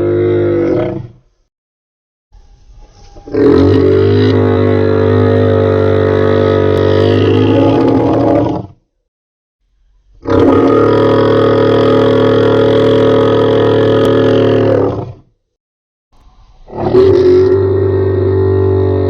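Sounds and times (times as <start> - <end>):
low dinosaur roar: 0.0 - 1.2, 3.2 - 8.8, 10.2 - 15.3, 16.6 - 19.0.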